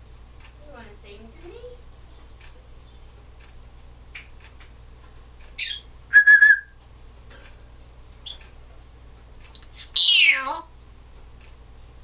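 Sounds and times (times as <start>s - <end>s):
parrot whistling: 5.6s - 6.7s, 9.8s - 10.6s.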